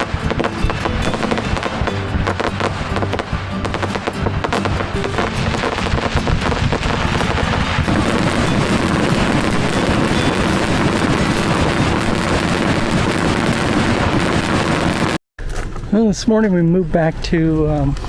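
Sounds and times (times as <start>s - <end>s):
background music: 0.0s - 14.1s
fireworks crackling and popping: 0.0s - 15.2s.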